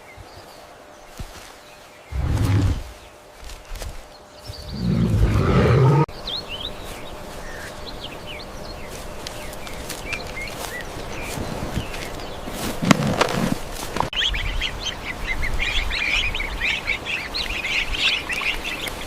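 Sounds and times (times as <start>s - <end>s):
birds chirping: 0.0s - 19.0s
low animal roar: 2.1s - 2.9s, 4.6s - 6.1s.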